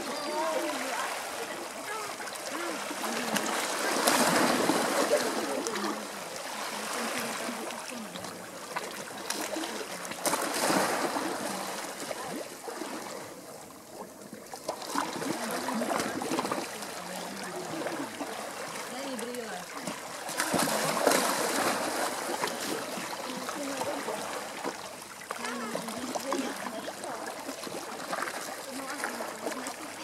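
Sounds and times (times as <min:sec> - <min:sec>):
faint voices: 0:00.0 - 0:14.2, 0:14.8 - 0:30.0
water splashing and lapping: 0:00.0 - 0:30.0.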